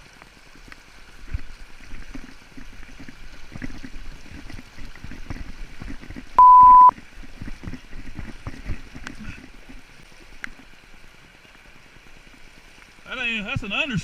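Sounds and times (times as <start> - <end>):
river water running: 0.0 - 14.0
electronic beep: 6.4 - 6.9.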